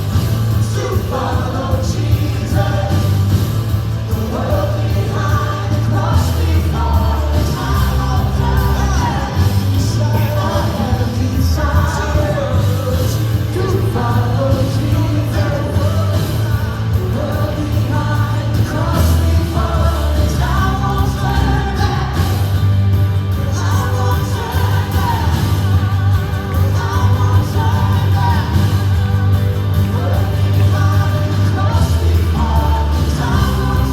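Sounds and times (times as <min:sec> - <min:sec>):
rock pop band playing: 0:00.0 - 0:33.9
person singing: 0:23.4 - 0:33.9.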